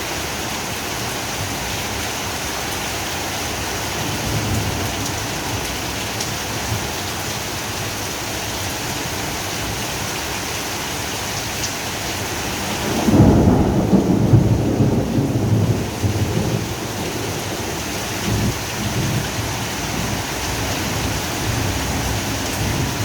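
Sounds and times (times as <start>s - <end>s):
heavy rain pouring: 0.0s - 23.0s
thunder rumbling: 12.6s - 20.3s.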